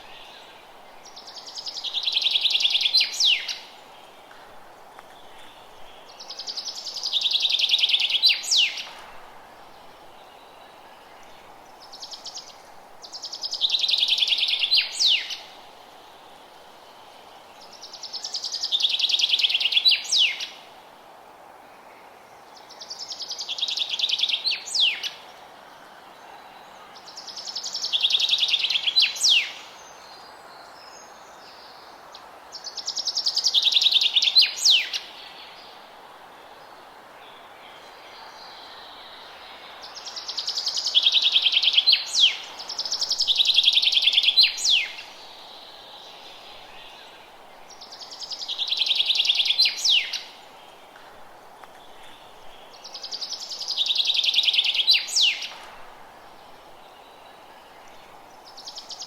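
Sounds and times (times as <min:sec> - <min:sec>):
low background hiss: 0:00.0 - 0:59.0.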